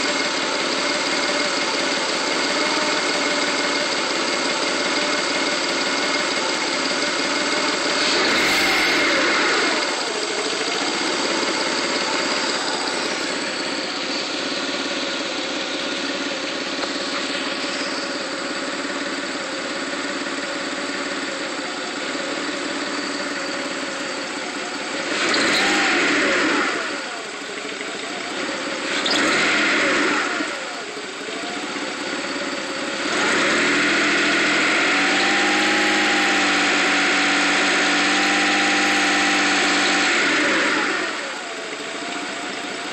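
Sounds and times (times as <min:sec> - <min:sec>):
car engine idling and revving: 0:00.0 - 0:42.9.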